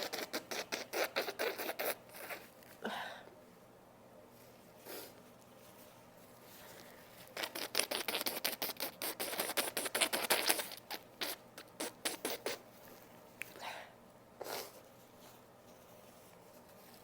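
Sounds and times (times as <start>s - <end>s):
paper tissue crinkling: 14.5s - 17.0s.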